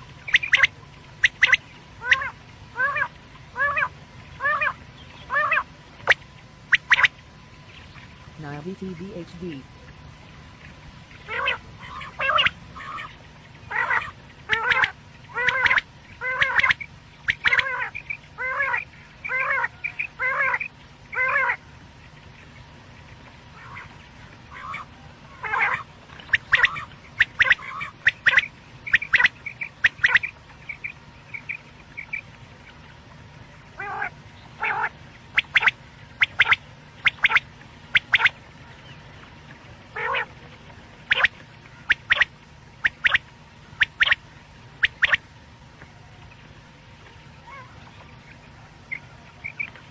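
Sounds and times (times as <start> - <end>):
quail calling: 0.2 - 7.2, 11.2 - 21.6, 23.5 - 32.3, 33.8 - 38.4, 39.9 - 40.3, 41.0 - 43.2, 43.8 - 44.2, 44.8 - 45.2, 48.9 - 49.9.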